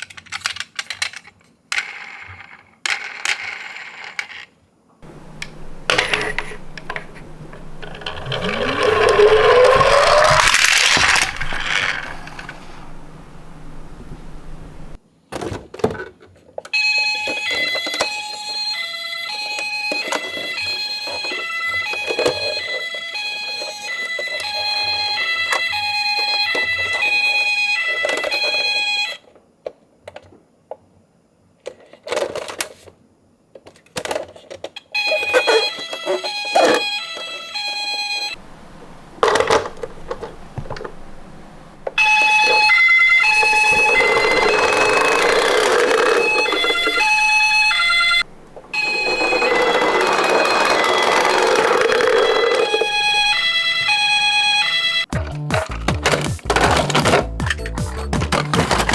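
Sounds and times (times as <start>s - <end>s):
toy cars rolling and clattering: 0.0s - 15.0s, 15.7s - 30.9s, 31.6s - 58.9s
electronic siren beeps: 42.0s - 55.6s.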